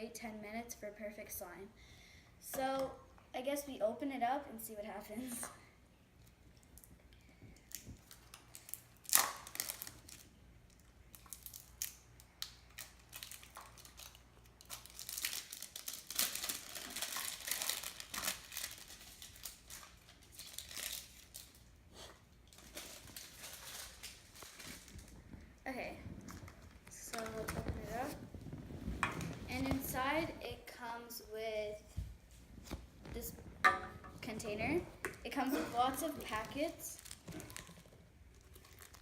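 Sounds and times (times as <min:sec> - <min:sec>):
packaging rustling: 0:12.7 - 0:21.6, 0:22.5 - 0:25.4, 0:36.1 - 0:39.0.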